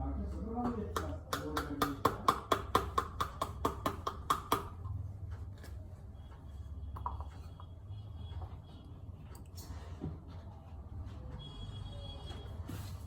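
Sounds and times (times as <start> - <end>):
tapping on pomegranate rind: 0.6 - 4.9.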